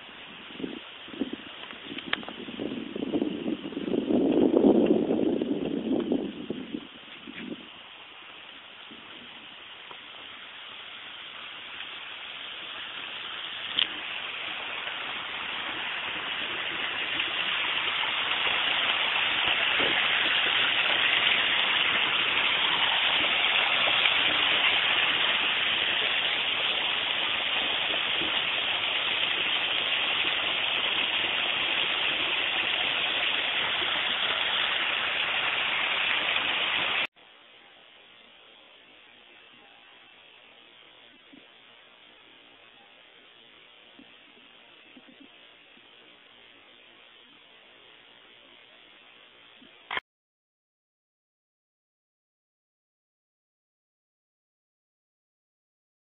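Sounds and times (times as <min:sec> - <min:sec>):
faint hiss: 0:00.0 - 0:50.0
garden waterfall splashing: 0:07.6 - 0:37.1.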